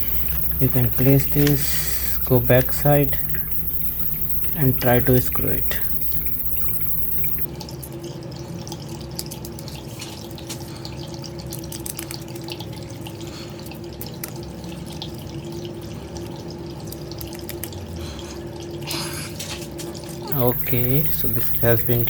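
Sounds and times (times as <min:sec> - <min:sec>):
steady hum: 0:00.0 - 0:07.5, 0:20.3 - 0:22.0.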